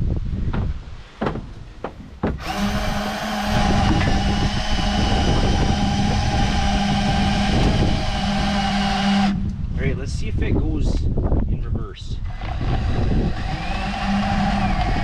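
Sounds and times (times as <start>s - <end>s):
drill winch winding cable: 2.4s - 9.5s, 12.2s - 15.0s.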